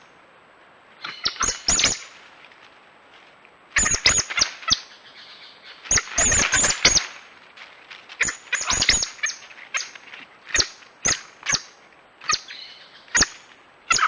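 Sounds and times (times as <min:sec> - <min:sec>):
coati chirping: 0:01.0 - 0:02.1, 0:08.2 - 0:14.0.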